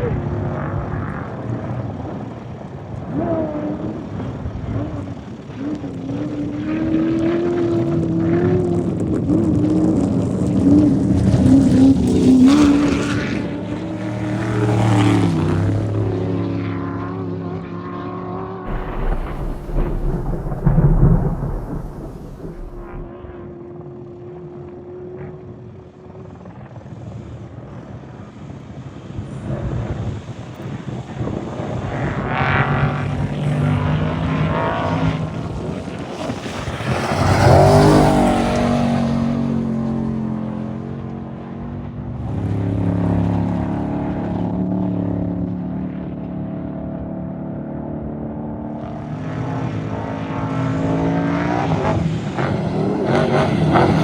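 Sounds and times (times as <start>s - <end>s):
race vehicle engines revving: 18.7s - 23.1s.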